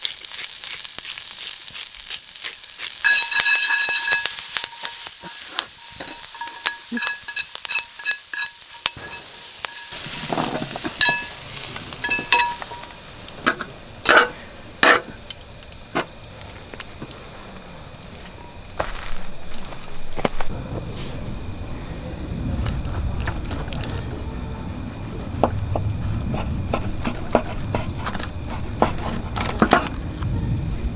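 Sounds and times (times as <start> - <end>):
food sizzling in a frying pan: 0.0 - 19.8
metal utensil clinking on pan: 3.0 - 15.2.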